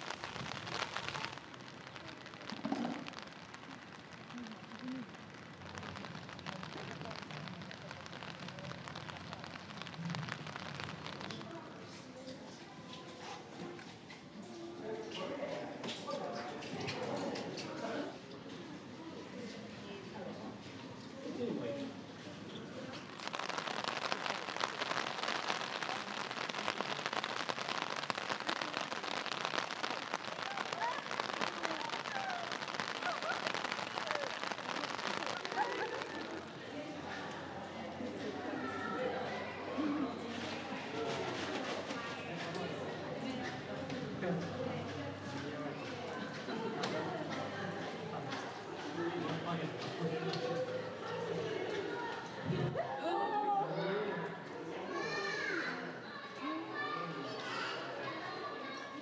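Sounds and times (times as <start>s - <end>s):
rain dripping on hard surfaces: 0.0s - 12.0s, 22.9s - 37.8s.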